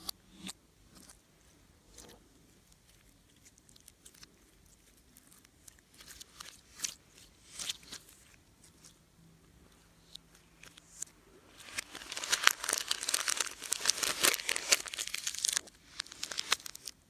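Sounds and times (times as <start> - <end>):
slime crackling: 11.6 - 17.0.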